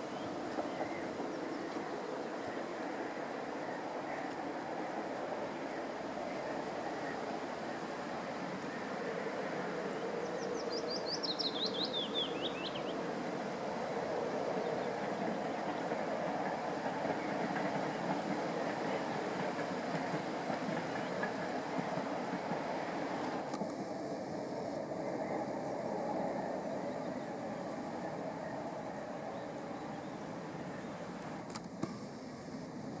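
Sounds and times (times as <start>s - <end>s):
songbird singing: 0.0s - 4.3s, 8.7s - 19.6s, 25.1s - 31.4s.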